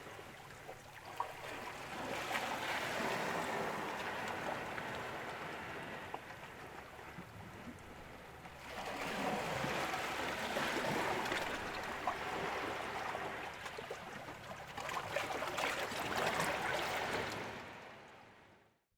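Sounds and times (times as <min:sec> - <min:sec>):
ocean waves breaking: 0:01.1 - 0:06.8, 0:08.6 - 0:13.9.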